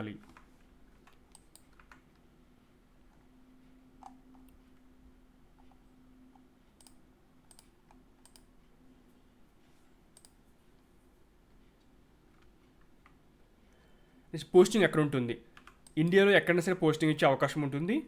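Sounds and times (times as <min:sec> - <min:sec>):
faint steady hum: 0:00.0 - 0:18.0
computer clicks: 0:00.2 - 0:02.2, 0:04.0 - 0:04.6, 0:05.6 - 0:08.5, 0:10.1 - 0:10.4, 0:15.5 - 0:16.2.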